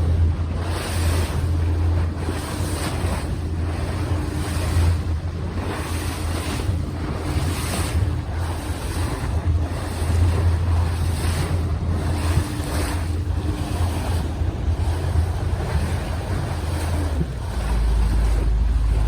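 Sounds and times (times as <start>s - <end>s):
boat engine humming: 0.0s - 19.0s
water rushing past hull: 0.0s - 19.0s
wind buffeting microphone: 0.0s - 19.0s.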